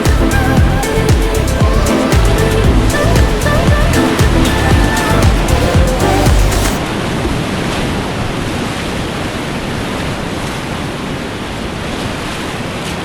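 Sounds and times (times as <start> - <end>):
whitewater rushing: 0.0 - 6.8.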